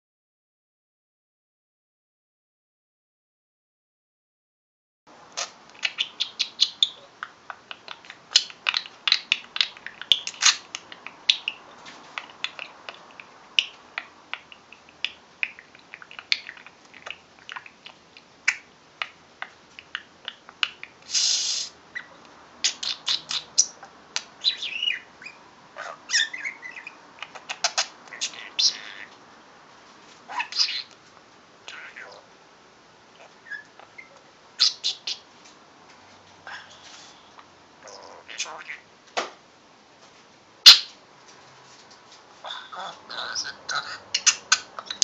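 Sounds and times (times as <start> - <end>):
budgerigar chattering: 5.4 - 18.7, 22.0 - 29.1, 30.3 - 30.9, 31.7 - 32.2, 33.2 - 35.2, 37.8 - 38.8, 42.4 - 45.0.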